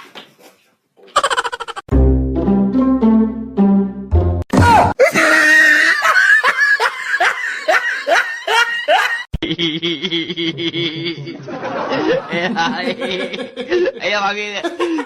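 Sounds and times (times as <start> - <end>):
person laughing in high bursts: 1.2 - 1.9, 5.0 - 14.0.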